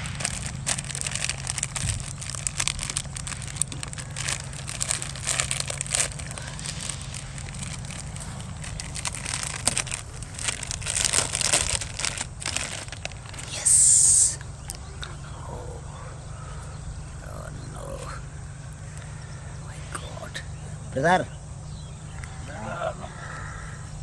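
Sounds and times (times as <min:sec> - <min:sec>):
dense clicks: 0:00.0 - 0:15.2
rustling and crackling: 0:00.0 - 0:15.3
steady low hum: 0:00.0 - 0:24.0.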